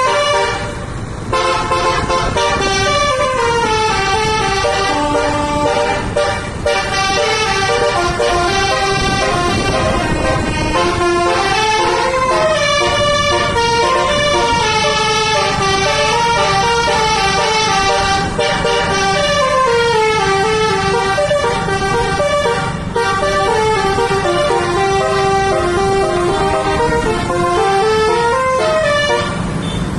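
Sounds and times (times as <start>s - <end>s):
multi-tone air horn melody: 0.0s - 29.8s
bus engine rumble: 0.0s - 29.9s.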